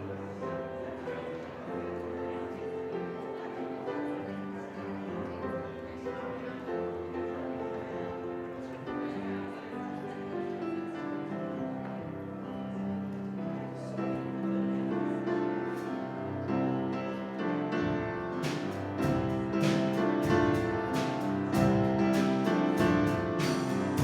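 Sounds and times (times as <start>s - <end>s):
piano sustained chords: 0.0s - 24.0s
regular beat of sharp strikes: 18.4s - 24.0s.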